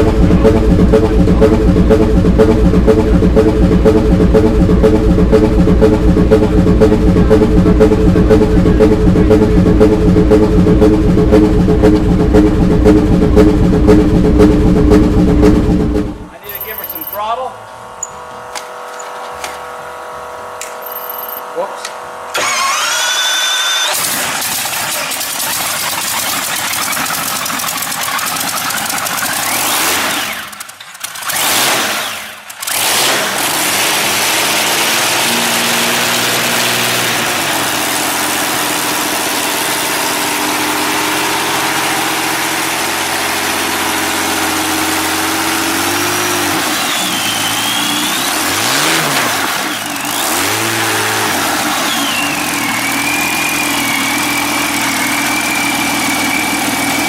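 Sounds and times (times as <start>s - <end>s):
engine running rough: 0.0s - 57.0s.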